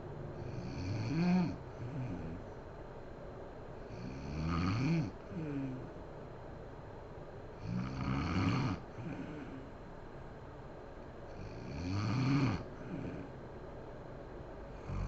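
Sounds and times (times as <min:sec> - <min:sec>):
woman snoring: 0:00.4 - 0:02.4, 0:03.9 - 0:05.9, 0:07.6 - 0:09.7, 0:11.3 - 0:13.4, 0:14.8 - 0:15.0
soft breath: 0:01.5 - 0:02.6, 0:05.3 - 0:06.0, 0:08.9 - 0:09.9, 0:12.6 - 0:13.5.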